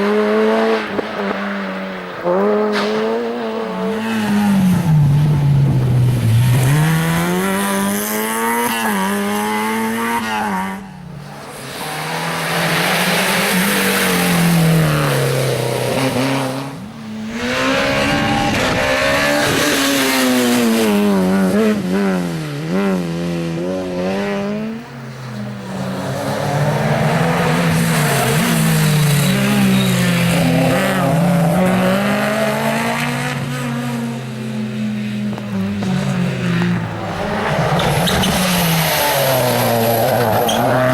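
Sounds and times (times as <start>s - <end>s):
rally car engines revving: 0.0s - 40.9s
tyre squeal: 28.1s - 30.4s, 37.5s - 40.9s.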